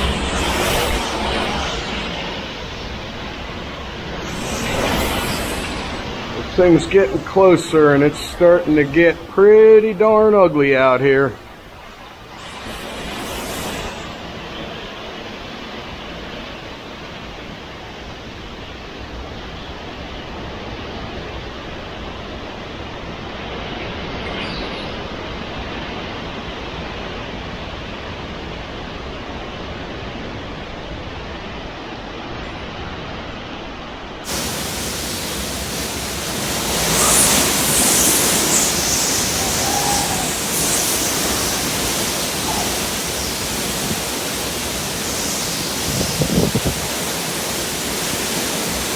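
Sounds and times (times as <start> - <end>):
rain: 0.0 - 9.5, 34.0 - 48.9
strong wind: 34.2 - 48.9.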